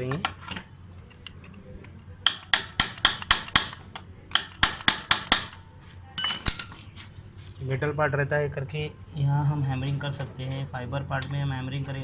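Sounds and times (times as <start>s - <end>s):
hammer tapping metal bolt: 2.2s - 5.6s
ringing metallic clink: 6.2s - 6.9s.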